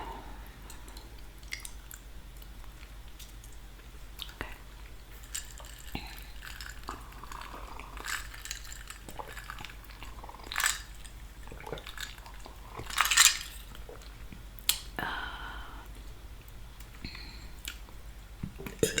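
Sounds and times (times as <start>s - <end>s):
mouth chewing pasta: 0.7s - 14.9s.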